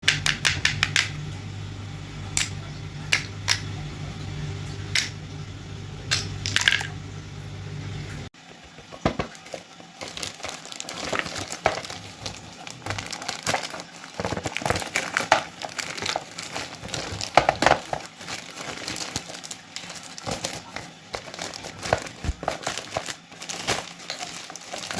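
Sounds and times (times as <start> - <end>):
steady low hum: 0.0 - 8.3
packaging crinkling and rustling: 8.7 - 24.9
packaging clicks and taps: 9.0 - 24.9.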